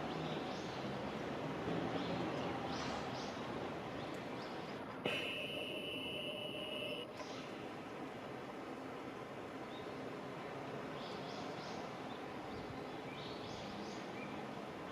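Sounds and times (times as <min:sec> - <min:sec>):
outdoor background hiss: 0:00.0 - 0:14.9
high-pitched whine: 0:05.1 - 0:07.1.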